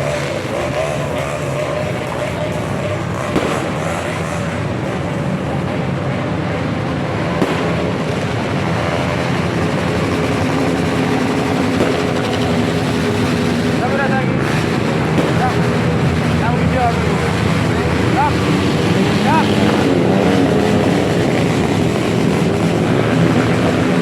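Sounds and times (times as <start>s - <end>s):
large crowd din: 0.0s - 24.0s
low rumble of motor traffic: 0.0s - 24.0s
short sharp firework cracks: 3.3s - 4.0s, 7.4s - 8.2s, 11.7s - 12.7s.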